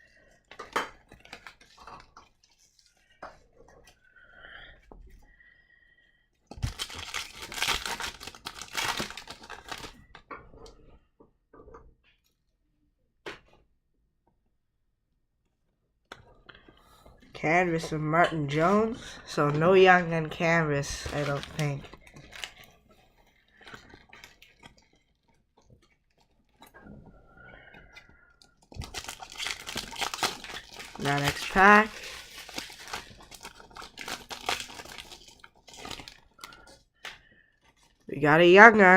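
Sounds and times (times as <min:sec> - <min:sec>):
foil wrapper crinkling: 0:01.0 - 0:03.0, 0:06.5 - 0:10.2, 0:18.8 - 0:26.7, 0:28.6 - 0:37.0
trading cards clicking and rustling: 0:17.7 - 0:22.6, 0:28.7 - 0:36.2.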